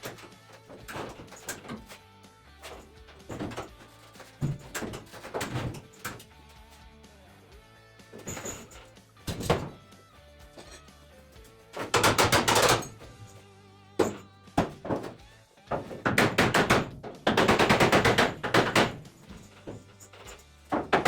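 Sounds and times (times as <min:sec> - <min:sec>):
background music: 0:00.0 - 0:21.0.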